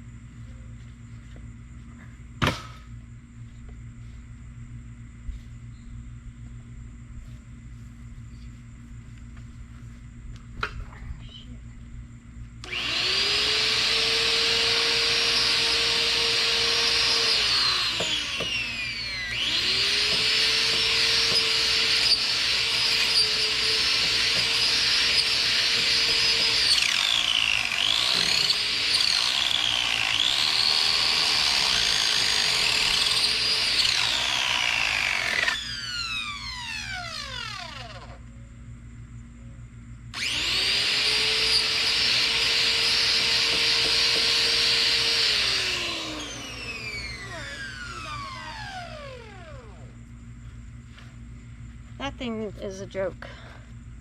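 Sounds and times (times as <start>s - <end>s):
electric chainsaw motor whine: 12.6s - 38.4s, 40.1s - 50.2s.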